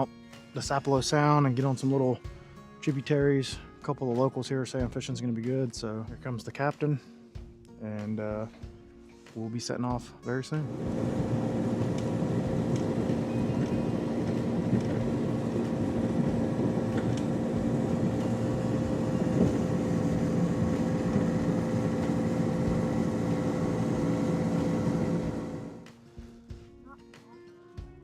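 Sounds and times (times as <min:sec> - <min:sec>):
outboard motor running: 0:10.7 - 0:25.8.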